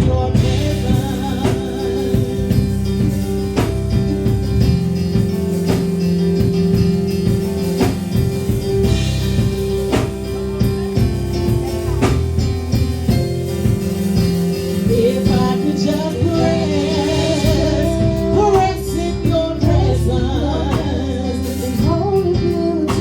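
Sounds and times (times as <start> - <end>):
guitar chords: 0.0 - 23.0
worship band playing slow gospel: 0.0 - 23.0
drum hits: 0.1 - 20.0.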